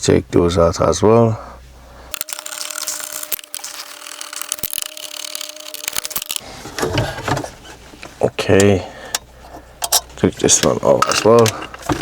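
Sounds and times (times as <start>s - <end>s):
screws scraping and clicking: 2.1s - 6.4s.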